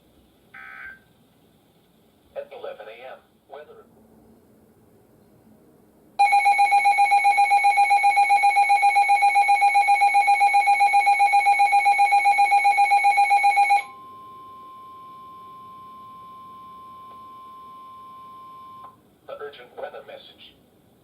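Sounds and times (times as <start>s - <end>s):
rapid pulsing alarm beep: 6.2s - 18.9s
steady alarm tone: 6.2s - 18.9s.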